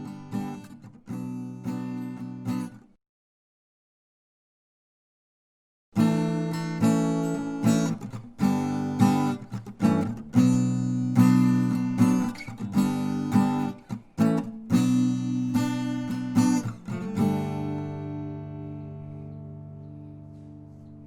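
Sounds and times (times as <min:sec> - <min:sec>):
acoustic guitar strumming chords: 0:06.0 - 0:21.0.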